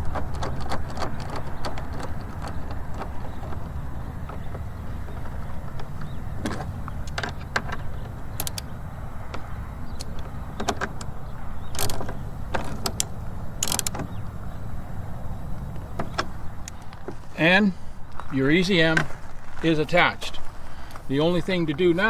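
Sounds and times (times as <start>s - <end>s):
low background rumble: 0.0s - 22.0s
wrench clicking on metal: 6.5s - 8.7s, 11.7s - 14.0s.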